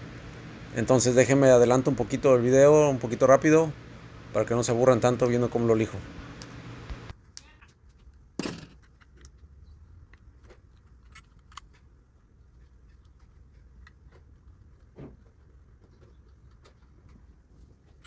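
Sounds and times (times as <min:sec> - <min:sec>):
low steady hum: 0:00.0 - 0:07.3.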